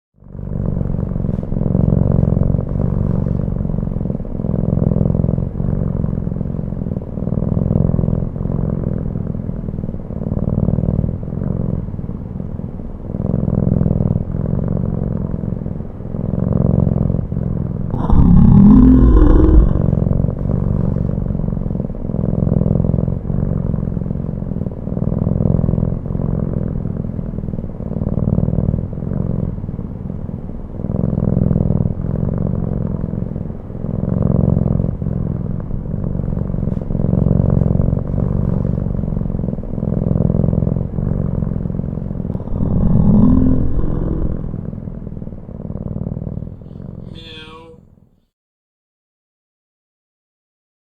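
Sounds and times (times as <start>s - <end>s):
cat purring: 0.2s - 47.9s
cat yawning: 18.0s - 20.0s, 42.4s - 44.6s, 46.9s - 47.8s.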